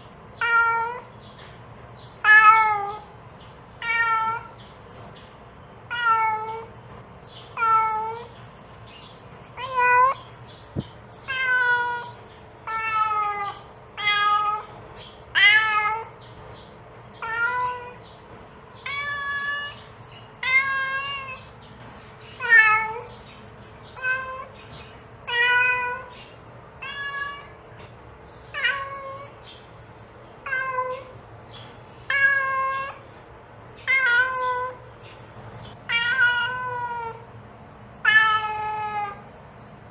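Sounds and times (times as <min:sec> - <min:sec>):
cat meowing: 0:00.4 - 0:01.1, 0:02.2 - 0:03.1, 0:03.8 - 0:04.6, 0:05.8 - 0:06.8, 0:07.5 - 0:08.4, 0:09.6 - 0:10.2, 0:11.2 - 0:14.7, 0:15.3 - 0:16.2, 0:17.2 - 0:18.0, 0:18.8 - 0:21.5, 0:22.4 - 0:23.1, 0:23.9 - 0:24.6, 0:25.2 - 0:26.2, 0:26.8 - 0:27.7, 0:28.5 - 0:29.4, 0:30.4 - 0:31.2, 0:32.0 - 0:33.1, 0:33.8 - 0:34.9, 0:35.8 - 0:37.3, 0:38.0 - 0:39.3.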